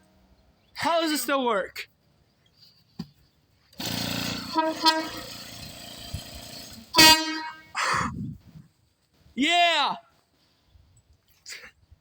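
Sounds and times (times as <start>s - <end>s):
air horn rush and blasts: 3.8s - 5.4s, 6.9s - 7.8s.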